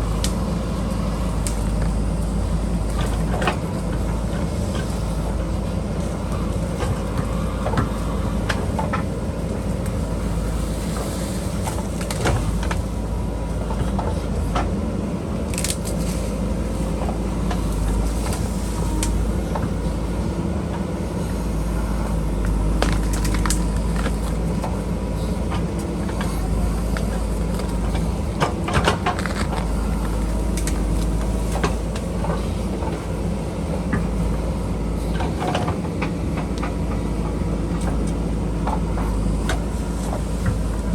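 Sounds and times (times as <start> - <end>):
diesel engine running under load: 0.0 - 40.9.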